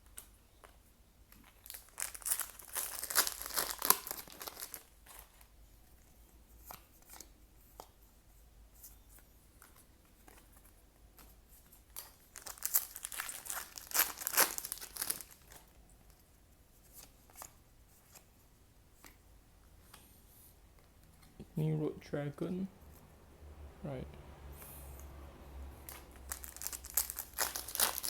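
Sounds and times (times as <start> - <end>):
foil pack tearing and crinkling: 1.7 - 4.8, 12.3 - 15.5, 26.2 - 28.0
cards ticking and rustling: 25.9 - 28.0.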